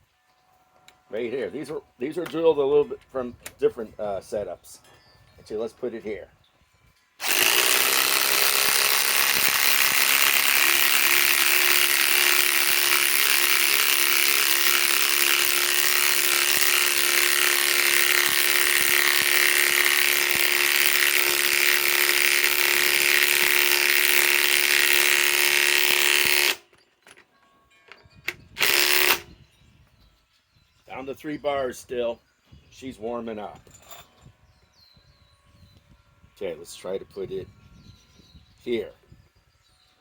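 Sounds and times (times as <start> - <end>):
impact wrench hammering: 7.2 - 26.6, 28.6 - 29.2.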